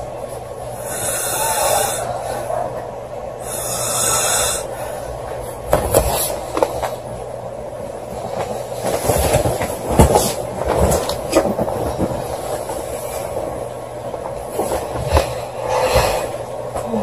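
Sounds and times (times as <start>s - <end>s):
woman snoring: 0.8s - 2.5s, 3.4s - 5.0s.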